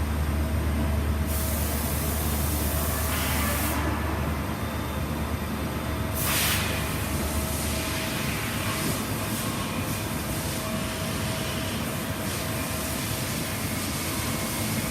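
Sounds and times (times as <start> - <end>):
machine low hum: 0.0 - 11.7
air hiss: 6.2 - 9.7.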